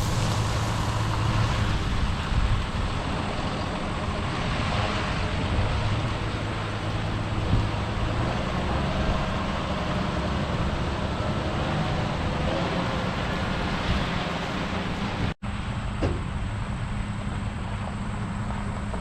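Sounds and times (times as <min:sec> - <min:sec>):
diesel engine rumble: 0:00.0 - 0:19.0
mechanical and airflow noise: 0:00.0 - 0:19.0.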